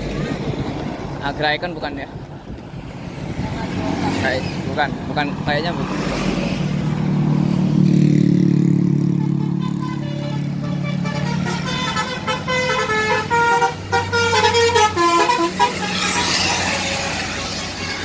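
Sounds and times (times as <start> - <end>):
bus engine drone: 2.1 - 18.0
multi-tone bus horn tune: 9.1 - 18.0.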